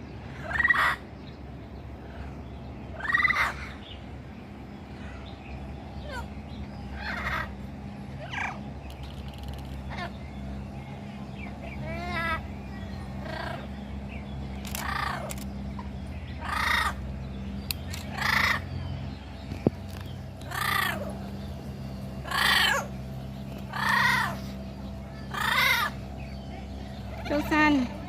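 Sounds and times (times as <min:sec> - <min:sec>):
low hum: 0:00.0 - 0:28.0
parrot squawking: 0:00.4 - 0:01.0, 0:03.0 - 0:03.8, 0:07.0 - 0:07.5, 0:13.2 - 0:13.7, 0:14.8 - 0:17.0, 0:18.1 - 0:18.7, 0:20.4 - 0:21.1, 0:22.2 - 0:23.0, 0:23.7 - 0:24.5, 0:25.2 - 0:26.0.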